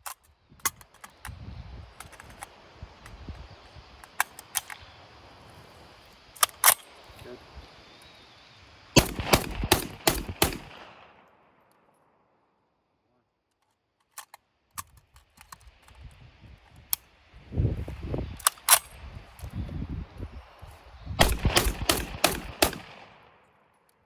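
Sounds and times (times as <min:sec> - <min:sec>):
rapid gunfire: 0:09.0 - 0:10.9, 0:21.2 - 0:23.2
gunshots: 0:09.0 - 0:11.2, 0:21.2 - 0:23.3.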